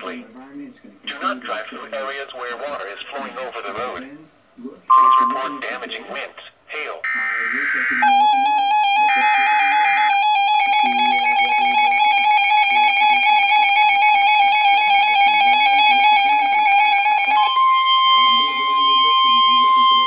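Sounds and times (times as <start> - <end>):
steady attention tone: 4.8 - 20.0
digital data burst: 7.1 - 8.4.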